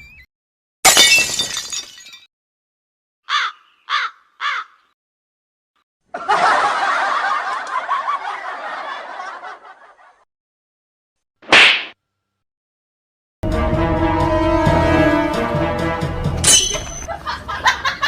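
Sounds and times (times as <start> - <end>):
crow-like caws: 3.2 - 5.0.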